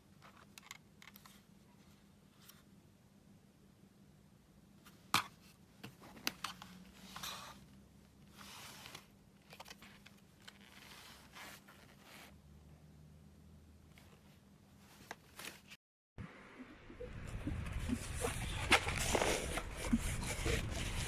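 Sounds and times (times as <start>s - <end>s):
rustling and scraping: 8.3s - 12.4s, 13.9s - 15.8s, 17.2s - 21.0s
faint low hum: 16.2s - 21.0s.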